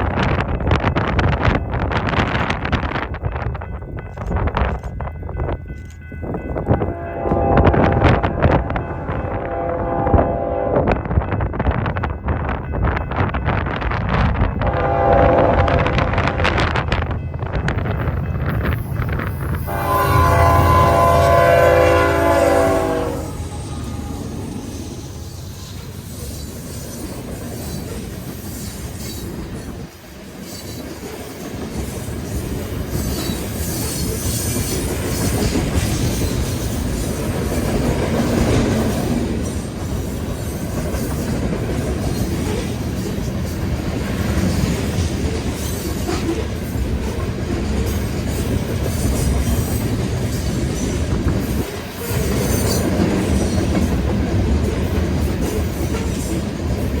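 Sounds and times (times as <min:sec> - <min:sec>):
wind on microphone: 0:00.0 - 0:26.5
freight train wheels rumbling: 0:00.0 - 0:57.0.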